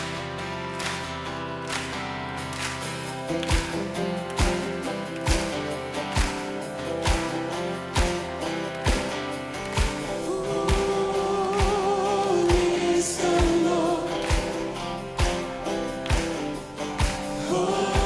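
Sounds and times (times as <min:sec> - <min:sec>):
song with steady drum beat: 0:03.4 - 0:18.0
person singing: 0:10.1 - 0:15.5, 0:17.0 - 0:18.0.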